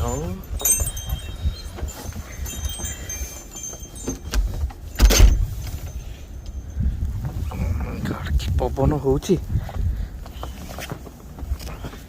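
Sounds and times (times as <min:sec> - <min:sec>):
thin high ringing tones: 0:00.0 - 0:06.9
blizzard wind buffeting microphone: 0:00.0 - 0:12.0.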